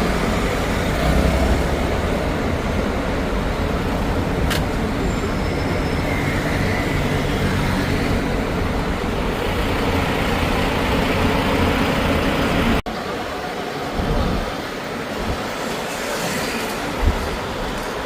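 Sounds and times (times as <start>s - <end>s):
bus engine and road noise: 0.0s - 18.0s.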